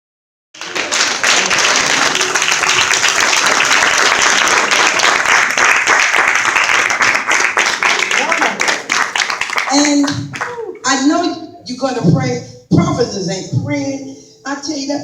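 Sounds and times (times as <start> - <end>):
crowd applauding: 0.6 - 10.8.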